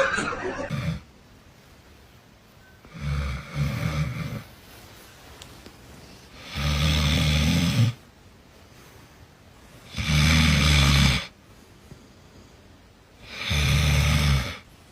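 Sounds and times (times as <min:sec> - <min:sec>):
loud snoring: 0:00.7 - 0:01.1, 0:02.8 - 0:04.5, 0:06.4 - 0:08.0, 0:09.8 - 0:11.4, 0:13.2 - 0:14.7.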